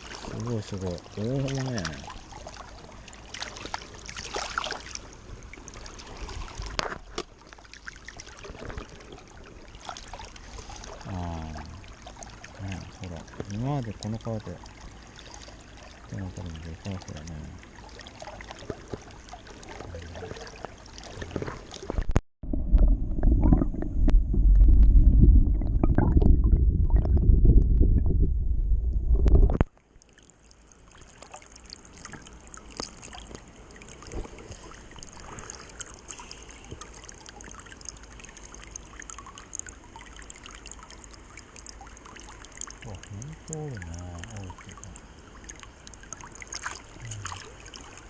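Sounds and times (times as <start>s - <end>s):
muffled low rumble of water: 0.0s - 48.0s
steady high hiss: 31.8s - 48.0s.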